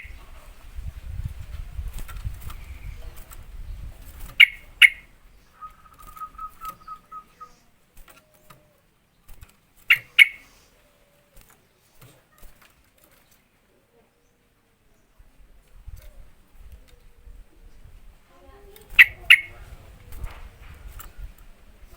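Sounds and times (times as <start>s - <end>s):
bird sharp calls: 0.0s - 0.4s, 4.1s - 8.8s, 9.8s - 11.4s, 18.9s - 20.3s
bird trill: 4.3s - 8.5s, 9.8s - 10.7s, 18.9s - 19.6s.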